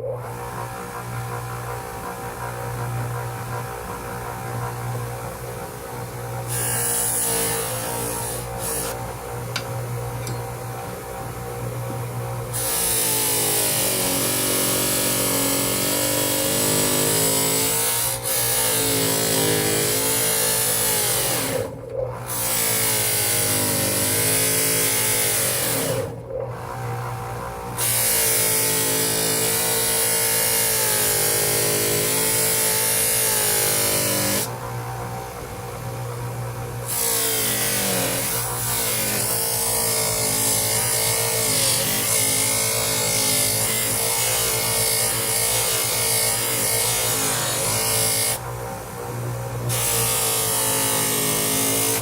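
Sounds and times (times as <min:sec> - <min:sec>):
grinder motor running: 0:00.0 - 0:52.0.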